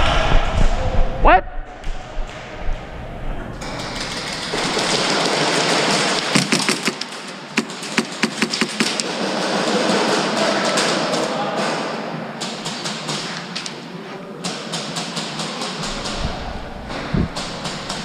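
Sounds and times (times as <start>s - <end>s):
airsoft gunfire: 3.7s - 13.3s, 14.4s - 18.0s
pellet hits: 6.3s - 9.1s.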